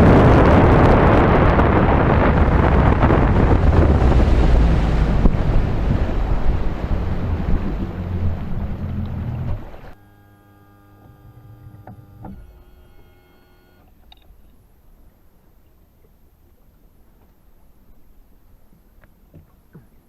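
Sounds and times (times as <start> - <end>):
wind and water rushing: 0.0 - 10.0
faint steady whine: 6.7 - 15.9.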